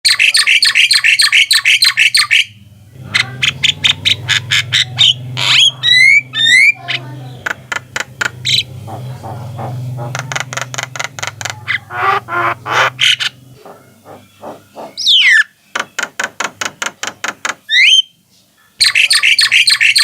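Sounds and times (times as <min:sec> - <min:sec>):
bird chattering and whistles: 0:00.1 - 0:15.6, 0:18.8 - 0:20.0
myna harsh calls: 0:02.5 - 0:15.5.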